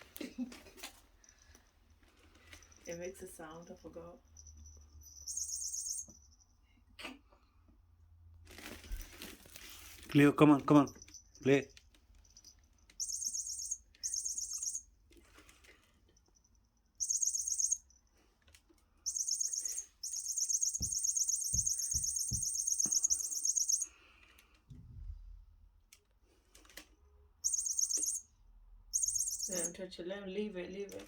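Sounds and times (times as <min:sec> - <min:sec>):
electronic bird chirping toy: 0:04.4 - 0:06.4, 0:12.3 - 0:14.9, 0:17.0 - 0:18.0, 0:19.1 - 0:23.9, 0:27.4 - 0:28.3, 0:28.9 - 0:29.8.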